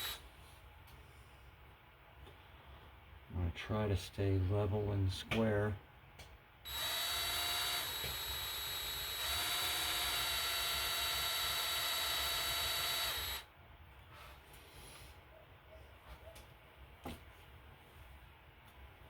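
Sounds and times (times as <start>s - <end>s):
electric drill motor whine: 0.0s - 0.2s, 6.7s - 13.5s.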